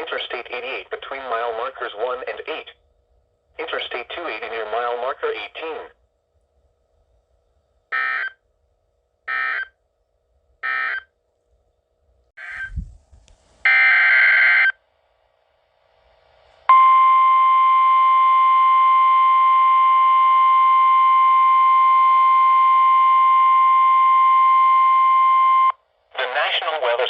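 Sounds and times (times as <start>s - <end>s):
steady alarm tone: 7.9s - 8.4s, 9.3s - 9.7s, 10.6s - 11.1s, 13.7s - 14.8s.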